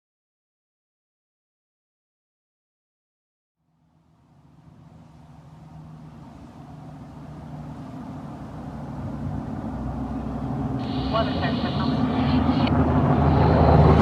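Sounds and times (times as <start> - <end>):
mechanical siren motor rumble: 3.6 - 14.0.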